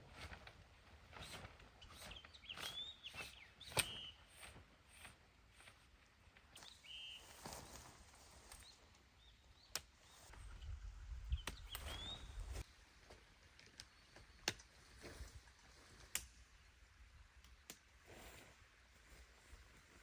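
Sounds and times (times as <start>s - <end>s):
bird chirp: 1.8s - 4.5s, 6.5s - 12.6s
sharp clicks: 2.5s - 4.0s.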